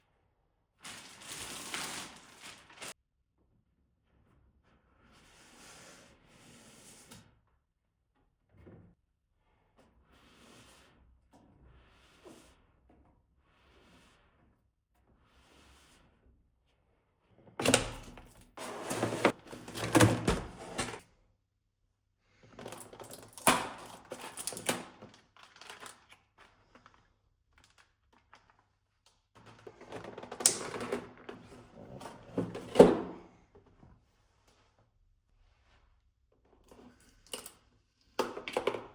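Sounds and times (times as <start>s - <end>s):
cardboard packaging rustling: 0.8s - 3.0s, 25.0s - 27.0s.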